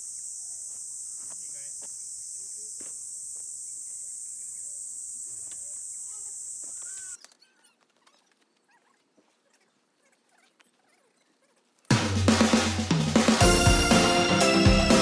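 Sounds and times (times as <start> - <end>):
high-pitched insect drone: 0.0 - 7.2
bird calls: 6.0 - 9.8.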